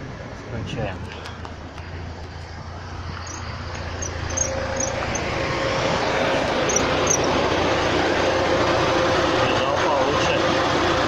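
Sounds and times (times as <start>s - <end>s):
steady motor hum: 1.1s - 11.0s
motor spinning up with rushing noise: 3.1s - 11.0s.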